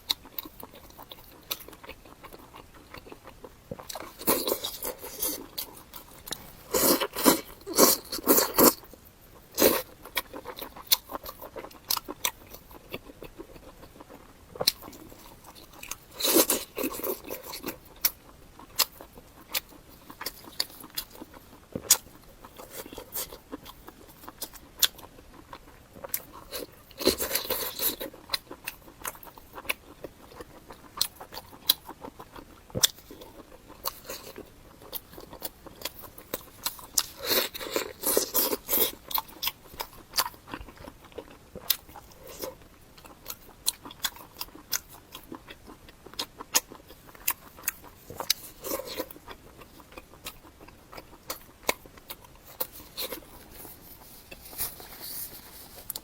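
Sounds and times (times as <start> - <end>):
close crunching and chewing: 0.0 - 56.0.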